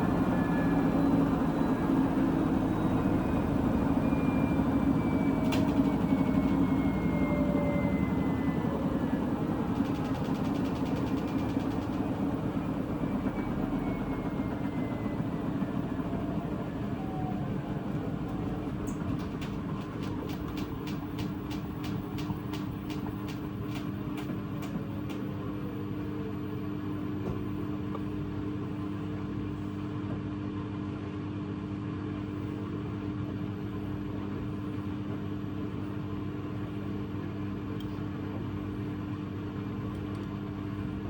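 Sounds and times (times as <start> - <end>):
washing machine spinning: 0.0 - 26.6.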